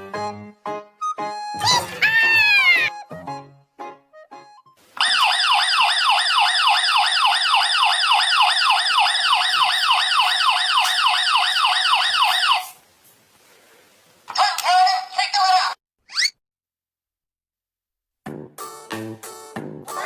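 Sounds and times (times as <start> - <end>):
siren yelping: 1.5 - 2.9, 5.0 - 12.8.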